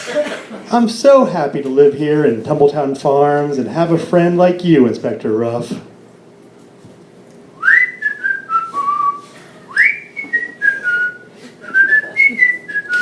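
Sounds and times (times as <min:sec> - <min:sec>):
person whistling a tune: 0:07.6 - 0:13.0.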